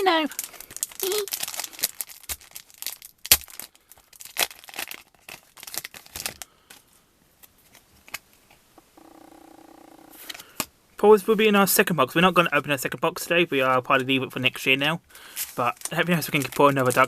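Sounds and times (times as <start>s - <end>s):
foil wrappers crinkling: 0.0s - 6.9s, 15.2s - 17.0s.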